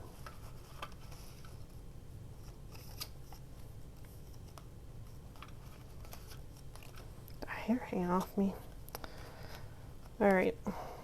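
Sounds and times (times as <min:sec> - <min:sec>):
paper rustling: 0:00.0 - 0:01.8, 0:02.4 - 0:07.2.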